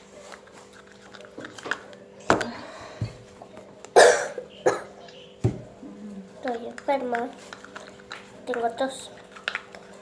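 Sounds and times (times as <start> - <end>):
person coughing: 4.0 - 5.0
slime being stirred squelching: 6.4 - 10.0.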